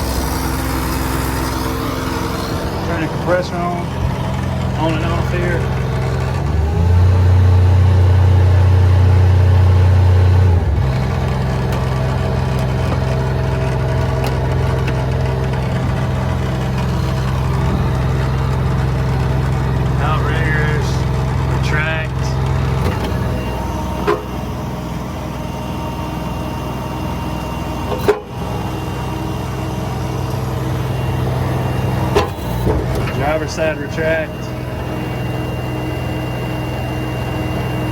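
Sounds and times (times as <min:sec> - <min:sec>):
compressor droning: 0:00.0 - 0:37.9
engine running steadily: 0:00.0 - 0:37.9.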